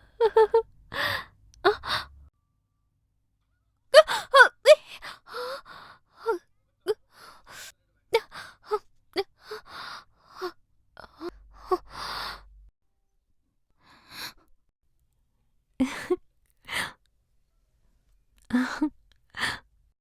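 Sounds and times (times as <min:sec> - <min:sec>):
woman laughing: 0:00.2 - 0:00.6
gasping in-breaths: 0:00.9 - 0:02.2.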